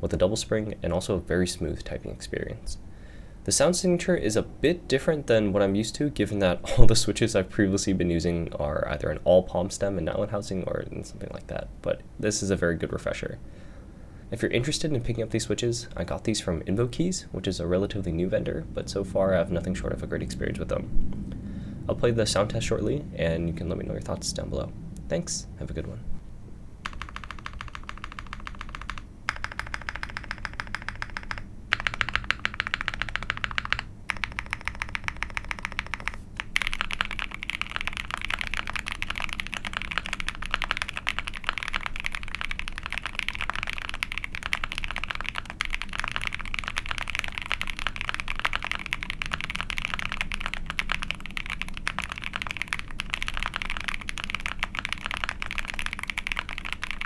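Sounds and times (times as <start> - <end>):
fast mechanical keyboard typing: 26.8 - 57.0.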